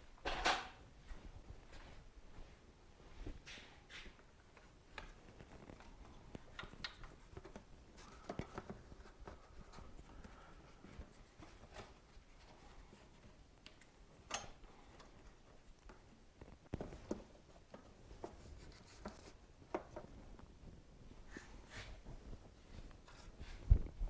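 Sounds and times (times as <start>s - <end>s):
clicks and taps of tools: 13.6s - 15.1s.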